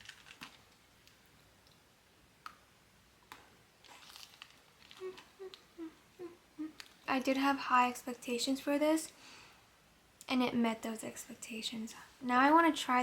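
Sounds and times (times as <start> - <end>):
chewing crunchy biscuit sticks: 0.0 - 1.8, 3.8 - 5.7
person humming mm: 4.9 - 6.9.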